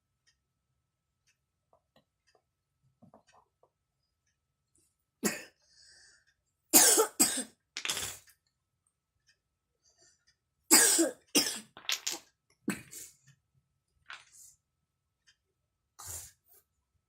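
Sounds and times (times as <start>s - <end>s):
young child coughing: 5.2s - 5.6s, 6.8s - 7.5s, 10.7s - 11.7s.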